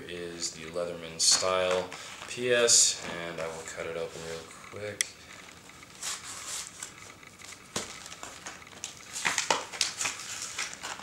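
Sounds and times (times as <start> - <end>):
plastic package crackling: 7.8 - 11.0.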